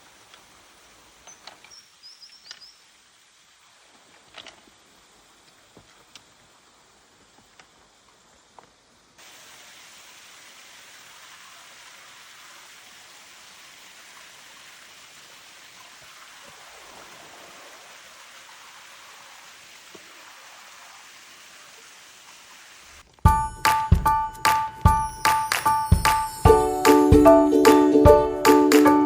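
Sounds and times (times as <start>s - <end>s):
water rushing: 0.0s - 8.3s, 9.1s - 28.8s
faint clicks: 0.2s - 0.5s, 1.2s - 2.7s, 3.9s - 4.8s, 5.4s - 6.4s, 7.4s - 8.8s.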